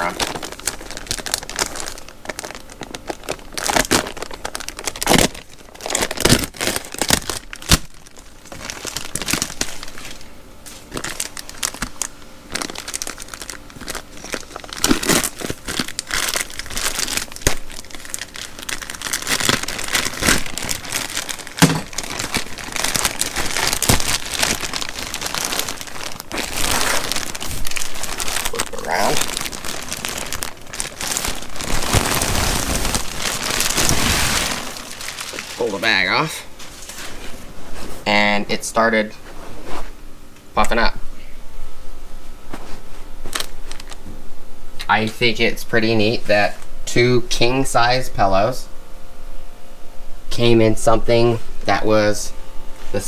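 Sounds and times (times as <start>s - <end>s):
plastic wrapping crinkling and tearing: 0.0s - 37.9s, 43.3s - 44.0s.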